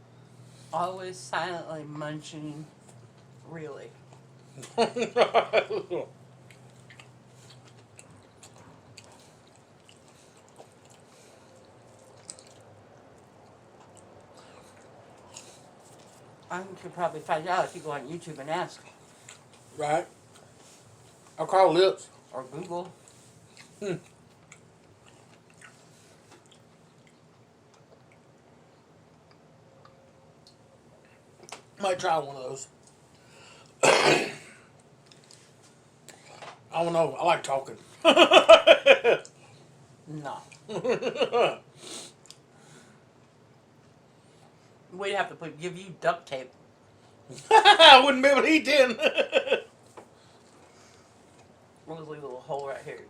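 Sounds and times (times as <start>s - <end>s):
person chewing food: 6.2s - 16.5s, 18.8s - 21.3s, 22.6s - 31.6s
wet mouth clicks and smacks: 11.6s - 15.5s.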